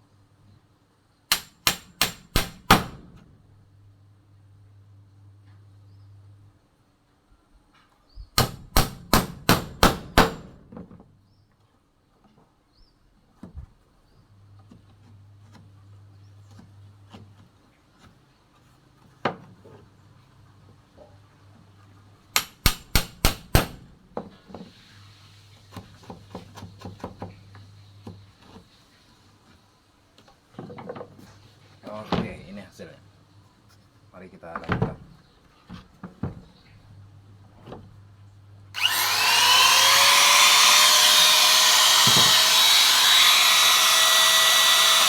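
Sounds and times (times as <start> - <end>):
hammer striking wood chisel: 1.3 - 3.0, 8.4 - 10.6, 22.4 - 23.8, 38.8 - 45.0.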